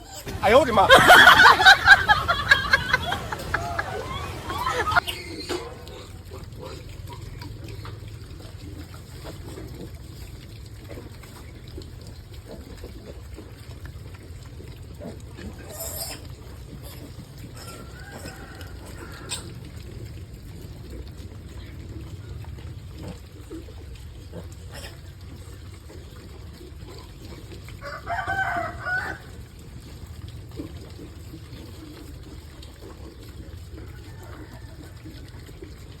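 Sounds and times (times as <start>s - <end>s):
pig slurping and chewing: 0.0s - 36.0s
rooster crowing: 0.8s - 5.0s, 17.7s - 19.3s, 27.8s - 29.3s.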